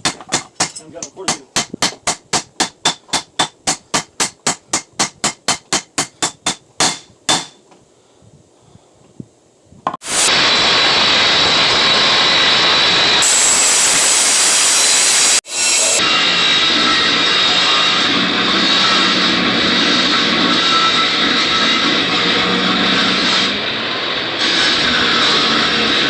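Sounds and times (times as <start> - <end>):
loud steady rushing noise: 10.0 - 26.0.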